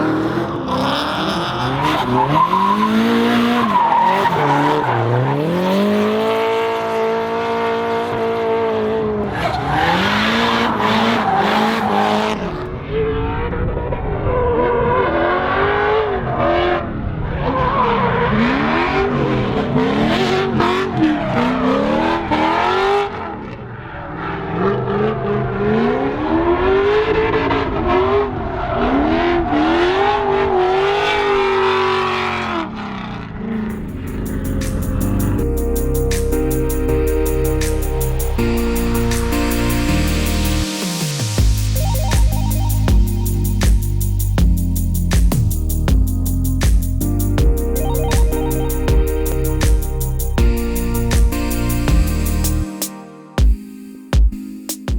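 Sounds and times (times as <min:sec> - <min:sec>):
car engines revving: 0:00.0 - 0:40.8
tyre squeal and skidding: 0:00.1 - 0:06.7, 0:09.2 - 0:12.6.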